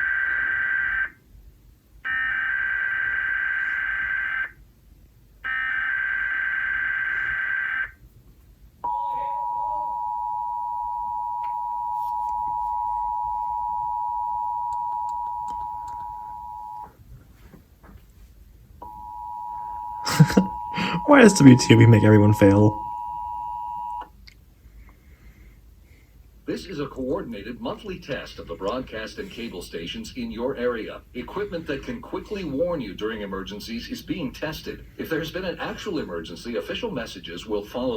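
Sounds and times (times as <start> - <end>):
steady two-tone attention signal: 18.9 - 24.0
person speaking: 20.1 - 22.8.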